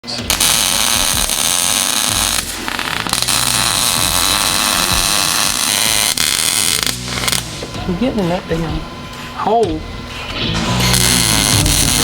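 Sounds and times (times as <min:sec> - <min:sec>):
welding arc crackling and hissing: 0:00.1 - 0:07.9, 0:10.5 - 0:12.0.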